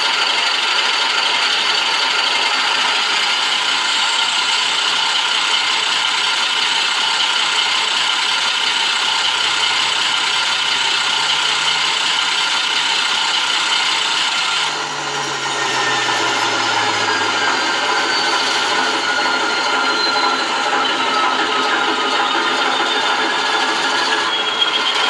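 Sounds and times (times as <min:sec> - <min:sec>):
diesel engine over loudspeaker: 0:00.0 - 0:25.0
thin falling whine: 0:13.6 - 0:25.0.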